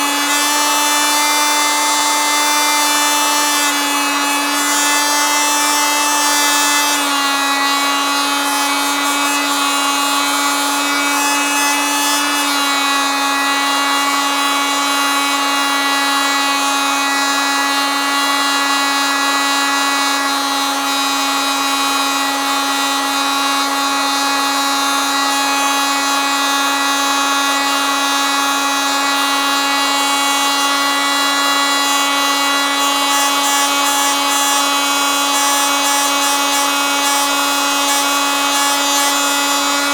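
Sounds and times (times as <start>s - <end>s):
oscillating multitool buzzing: 21.8s - 39.9s.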